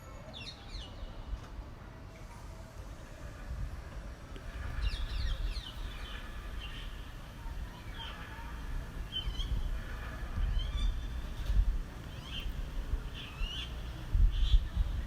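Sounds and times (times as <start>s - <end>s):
wind buffeting microphone: 2.7s - 15.0s
small birds chirping: 4.4s - 15.0s.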